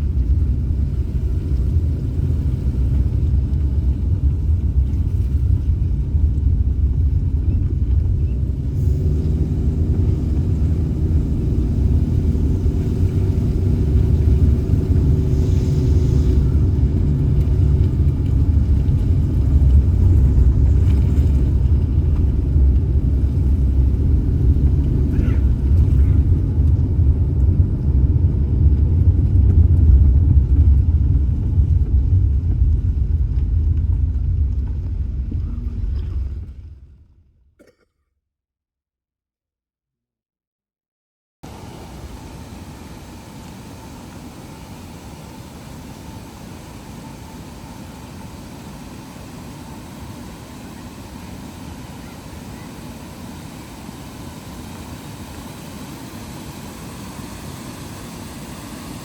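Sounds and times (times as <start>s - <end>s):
car engine and tyre rumble: 0.0s - 37.3s.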